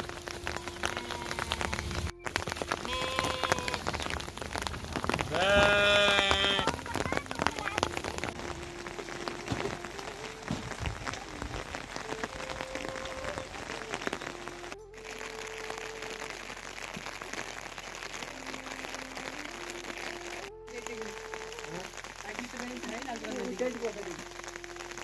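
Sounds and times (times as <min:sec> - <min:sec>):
steady rain hiss: 0:00.0 - 0:25.0
soft melody of held notes: 0:06.7 - 0:17.3.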